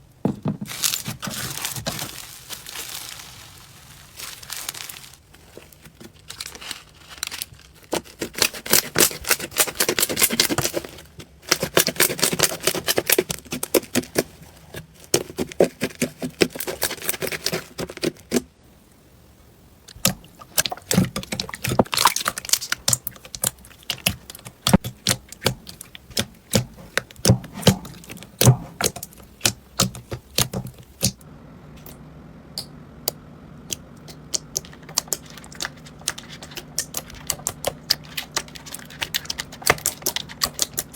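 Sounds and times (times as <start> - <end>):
slime clicking and crackling: 6.0 - 10.8, 11.5 - 14.4, 15.1 - 18.4, 19.9 - 31.2, 33.7 - 40.9
steady low hum: 18.5 - 40.9.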